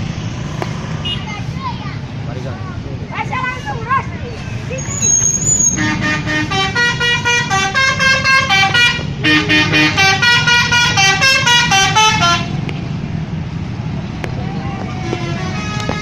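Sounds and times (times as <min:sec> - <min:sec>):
bus engine rumble: 0:00.0 - 0:16.0
bus multi-tone horn melody: 0:05.6 - 0:12.7, 0:14.9 - 0:16.0.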